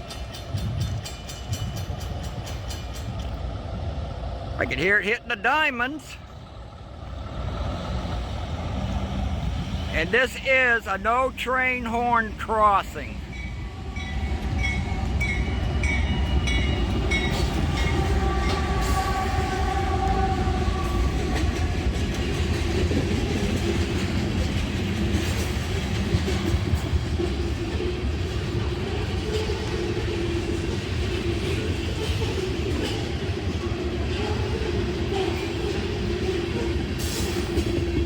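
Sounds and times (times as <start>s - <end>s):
train squeal: 0.0s - 3.4s, 13.3s - 23.0s, 26.6s - 38.0s
freight train rumbling: 0.0s - 38.0s
crossing bell dinging: 10.2s - 19.0s.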